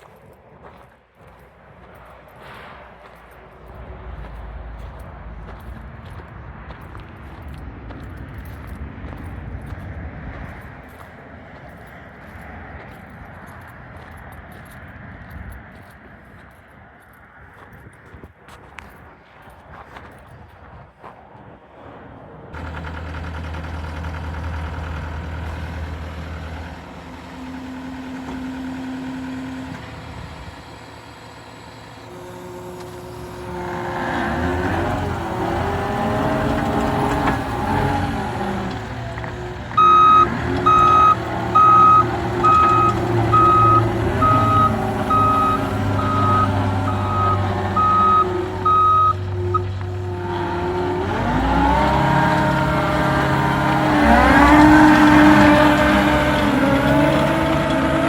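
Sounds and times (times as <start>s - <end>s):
diesel engine running: 0.0s - 16.5s, 22.6s - 58.0s
reverse alarm beeping: 39.8s - 49.7s.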